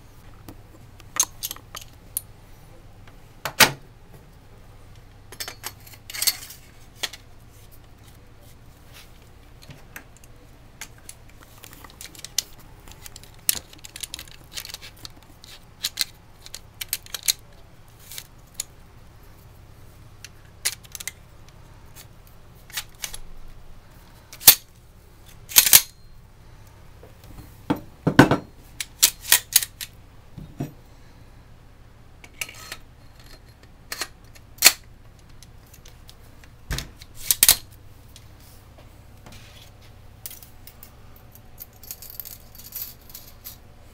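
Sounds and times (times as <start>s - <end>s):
metal gun parts clicking: 1.1s - 2.3s, 10.2s - 18.7s, 20.2s - 21.2s, 24.4s - 24.7s, 25.5s - 26.0s, 28.8s - 29.9s, 37.0s - 37.7s.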